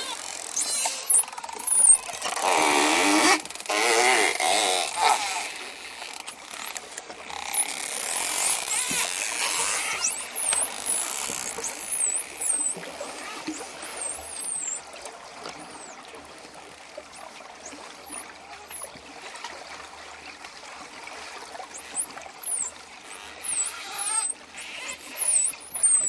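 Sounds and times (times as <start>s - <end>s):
dolphin whistles: 0.0s - 4.1s, 8.4s - 16.1s, 17.7s - 19.0s, 21.7s - 26.0s
buzzy wavering squawks: 0.0s - 5.8s, 6.4s - 15.0s, 15.6s - 16.0s, 17.6s - 18.9s, 21.7s - 26.0s
dolphin clicks: 0.0s - 16.6s, 17.7s - 18.9s, 21.7s - 26.0s.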